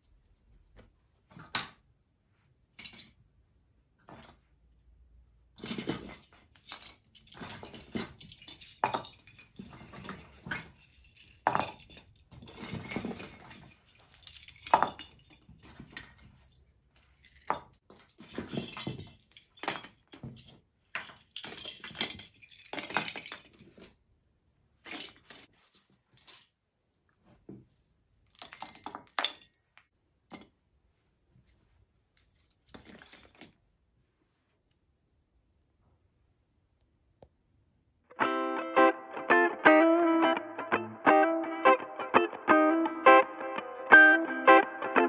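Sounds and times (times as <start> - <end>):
soft handling noise: 0.0 - 4.9, 5.5 - 24.1, 24.7 - 34.9
hard objects clinking and knocking: 5.6 - 24.0, 28.3 - 30.4.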